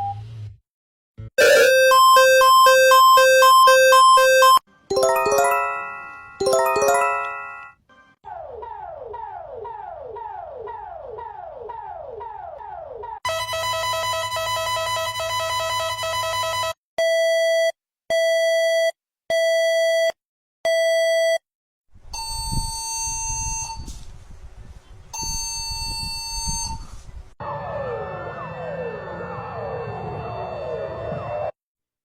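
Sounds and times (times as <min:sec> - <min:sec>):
siren wailing: 0:01.4 - 0:04.6, 0:27.4 - 0:31.5
electronic beeps: 0:01.4 - 0:05.5
long high alert tones: 0:01.4 - 0:07.7.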